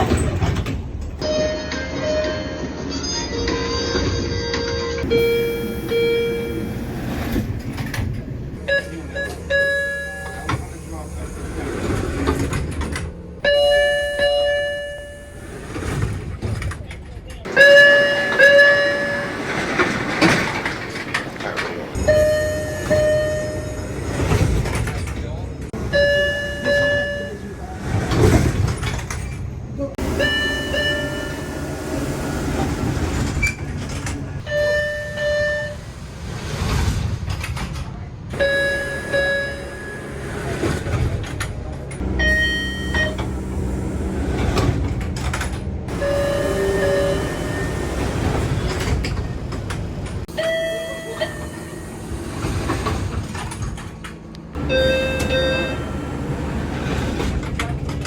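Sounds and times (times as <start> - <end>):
subway door chimes: 0.0 - 58.0
train car rumble and hum: 0.0 - 58.0.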